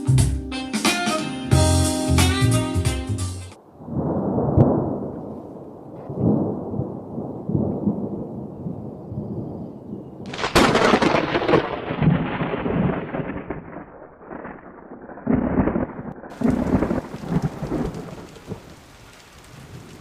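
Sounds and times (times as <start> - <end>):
sharp thunderclap: 3.8 - 5.2, 5.9 - 8.8, 10.3 - 18.7
low rolling thunder: 3.8 - 20.0.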